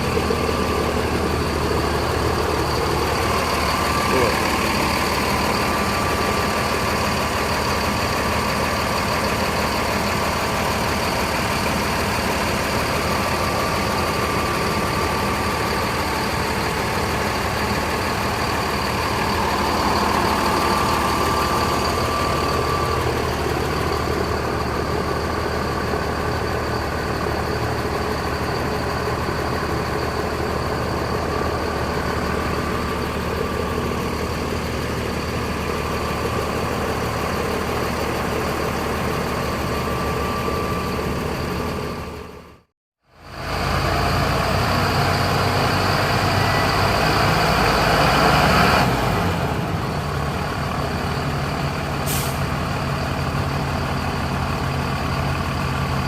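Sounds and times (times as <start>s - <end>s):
bus engines idling: 0.0s - 56.0s
steady whine: 10.9s - 42.3s.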